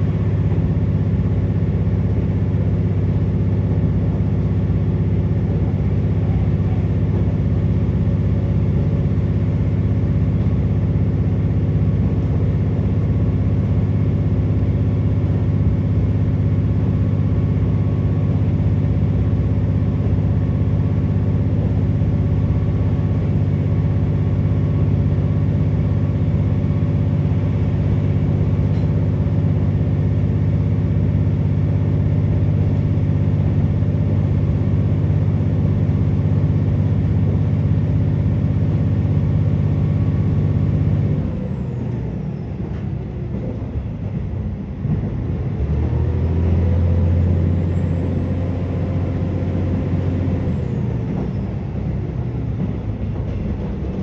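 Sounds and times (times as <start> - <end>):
diesel engine droning: 0.0 - 54.0
train wheels rolling on rails: 40.3 - 46.6, 47.2 - 54.0.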